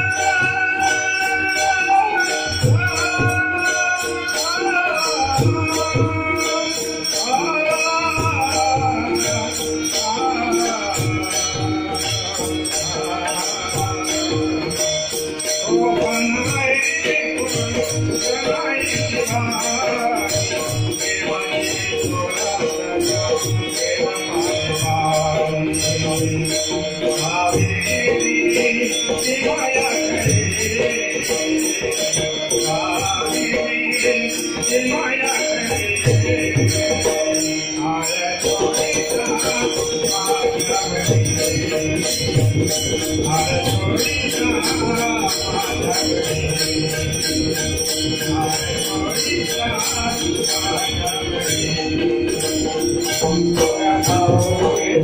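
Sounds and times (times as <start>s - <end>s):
jingling hand cymbals: 0.0s - 55.0s
voices singing: 0.0s - 55.0s.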